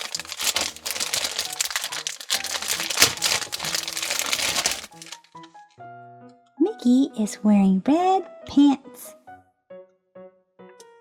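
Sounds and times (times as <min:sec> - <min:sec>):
toy packaging crinkling: 0:00.0 - 0:05.6
light background music: 0:00.0 - 0:11.0.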